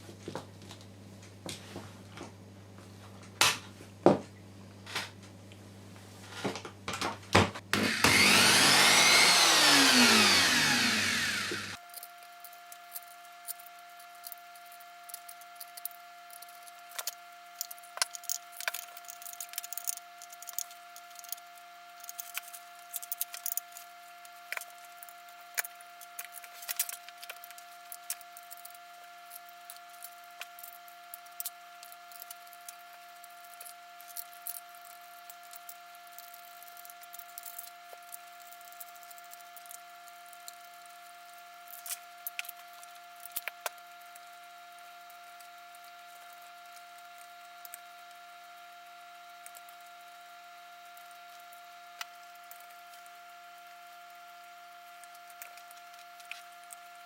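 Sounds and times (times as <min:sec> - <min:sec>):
router motor spinning down: 0:07.6 - 0:11.8
faint steady whine: 0:07.6 - 0:57.0.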